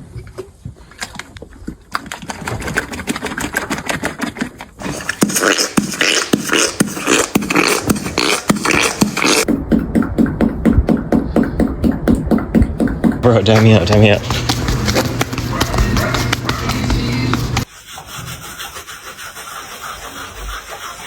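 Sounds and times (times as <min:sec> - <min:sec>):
horse smacking its lips: 0:00.3 - 0:09.5.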